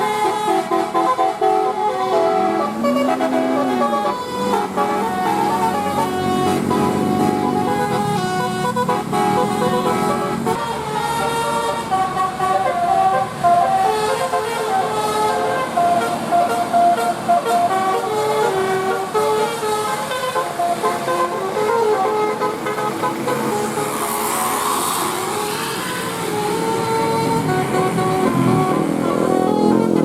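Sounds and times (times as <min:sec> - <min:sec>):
musical air horn playing a tune: 0:00.0 - 0:30.0.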